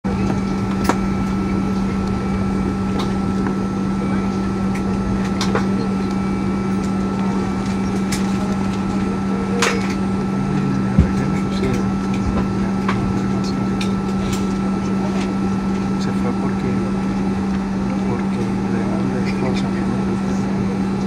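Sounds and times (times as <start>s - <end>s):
jet engines running: 0.0s - 21.0s.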